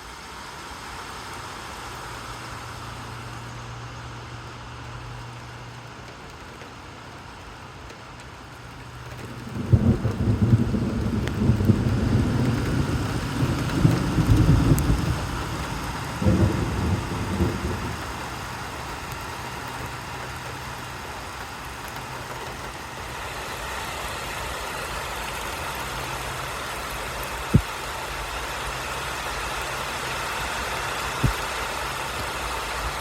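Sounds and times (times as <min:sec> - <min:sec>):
steady rain falling: 0:00.0 - 0:33.0.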